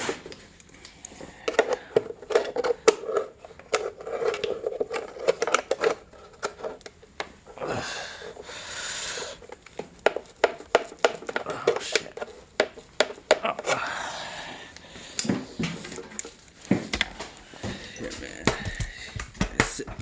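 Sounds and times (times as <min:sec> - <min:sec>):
packaging scraping and crinkling: 0:00.0 - 0:07.6, 0:08.2 - 0:13.7.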